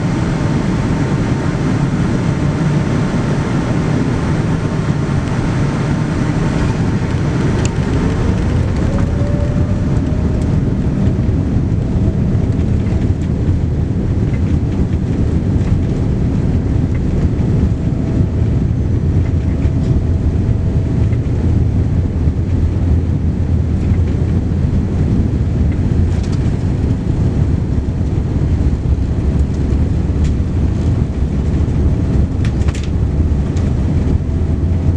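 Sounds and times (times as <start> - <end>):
jet engines spooling up: 0.4 - 13.2
rising engine tone: 0.8 - 12.8.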